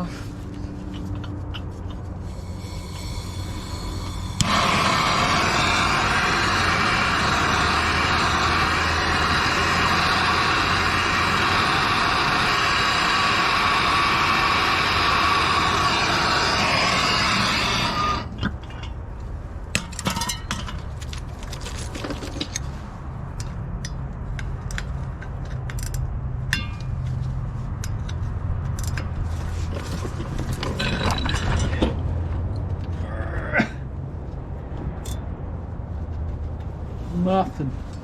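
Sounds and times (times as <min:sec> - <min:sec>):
steady low hum: 0:00.0 - 0:19.8
torch flame hissing: 0:02.2 - 0:18.4.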